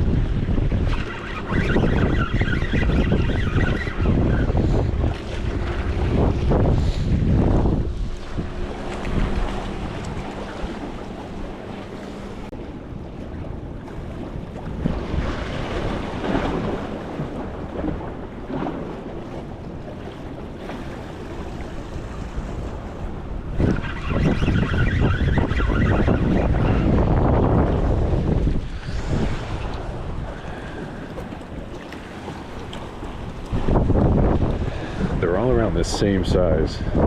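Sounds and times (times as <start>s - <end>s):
wind buffeting microphone: 0.0s - 37.0s
waves washing against rocks: 25.4s - 37.0s.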